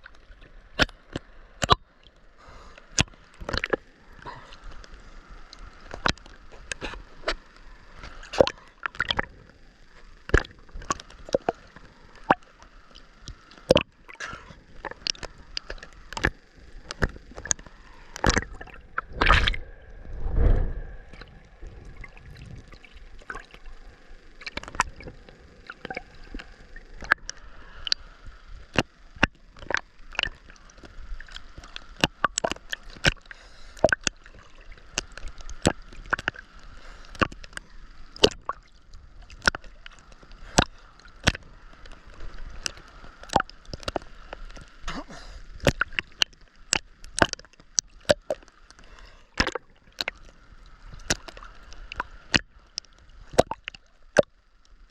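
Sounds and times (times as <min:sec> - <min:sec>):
water sloshing and gurgling: 0:00.0 - 0:54.9
low rush of water: 0:17.0 - 0:28.2.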